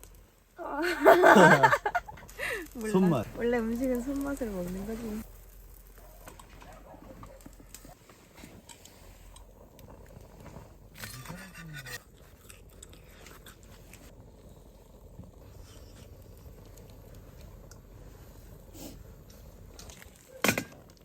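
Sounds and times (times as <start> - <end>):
chewing: 12.0 - 14.2.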